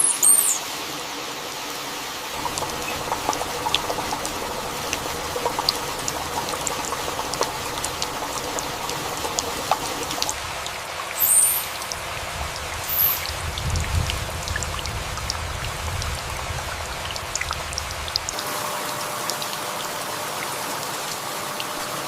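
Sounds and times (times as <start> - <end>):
high chirp: 0.0 - 0.6
heavy rain falling: 0.0 - 22.0
dripping and trickling water: 2.2 - 22.0.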